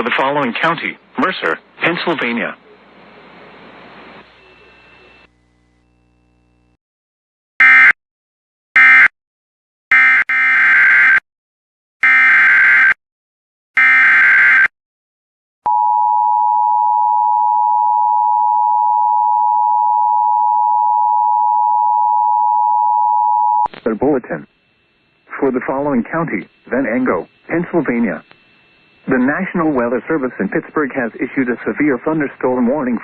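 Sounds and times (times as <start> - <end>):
steady attention tone: 15.7 - 33.0
alert data bursts: 25.2 - 32.3.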